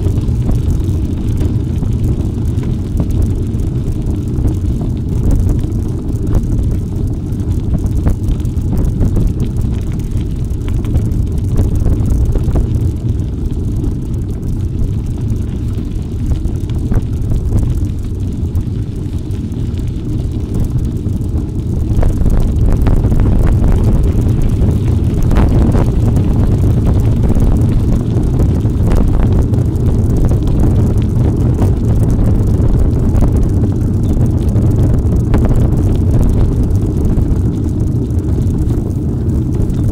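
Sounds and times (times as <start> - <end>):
wind buffeting microphone: 0.0 - 39.9.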